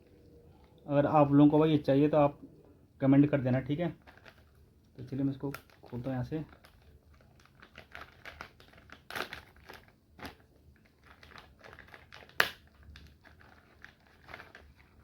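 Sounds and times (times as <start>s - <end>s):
plastic crinkling: 3.2s - 15.0s.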